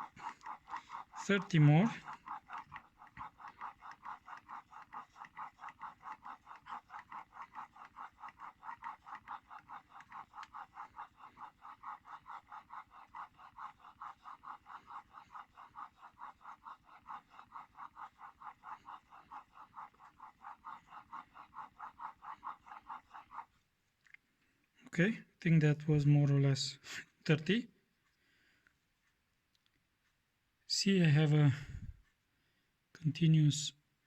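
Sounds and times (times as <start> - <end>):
plane blade scraping on waterstone: 0.0 - 23.6.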